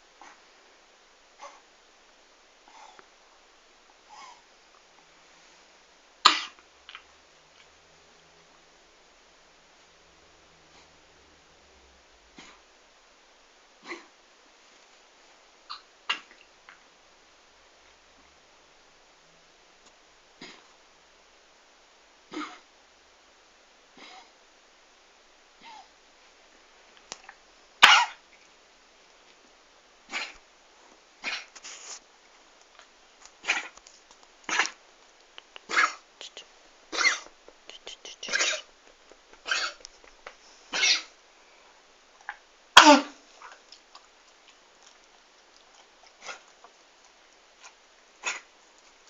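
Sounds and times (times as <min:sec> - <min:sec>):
dog coughing: 0:06.2 - 0:06.6, 0:15.7 - 0:16.4, 0:22.3 - 0:22.7, 0:27.8 - 0:28.2, 0:30.1 - 0:30.4, 0:31.2 - 0:31.5, 0:34.5 - 0:34.8, 0:35.6 - 0:36.0, 0:36.9 - 0:37.4, 0:38.2 - 0:39.9, 0:40.7 - 0:41.1, 0:42.8 - 0:43.2, 0:48.2 - 0:48.5.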